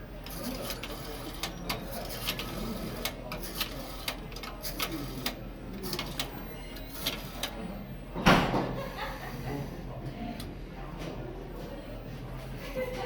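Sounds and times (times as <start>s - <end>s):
payphone clatter: 0.2s - 7.6s.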